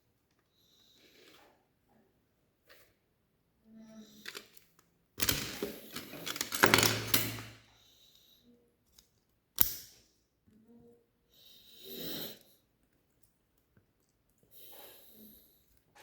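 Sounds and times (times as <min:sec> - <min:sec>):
plastic bricks clicking and rattling: 0:05.2 - 0:07.6.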